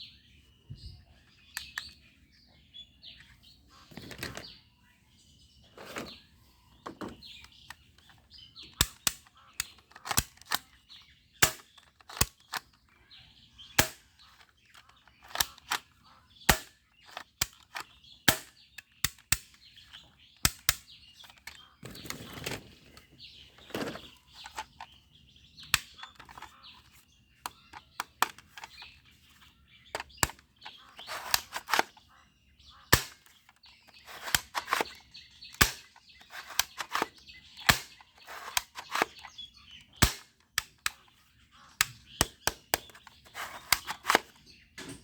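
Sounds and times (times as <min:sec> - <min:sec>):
toy handling knocks: 0:06.8 - 0:09.2, 0:25.7 - 0:28.9, 0:30.0 - 0:32.0, 0:34.0 - 0:39.2
toy gun firing sharp snaps: 0:11.4 - 0:12.6, 0:13.8 - 0:14.1, 0:16.5 - 0:19.6, 0:20.4 - 0:20.9, 0:32.9 - 0:33.3, 0:35.6 - 0:39.2, 0:40.0 - 0:41.0.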